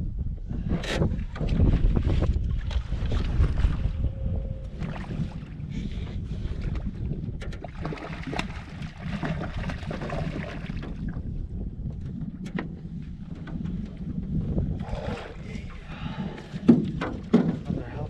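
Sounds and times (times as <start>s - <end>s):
wind buffeting microphone: 0.0s - 18.0s
water lapping against boat: 0.6s - 18.0s
sharp knocks: 16.6s - 17.8s.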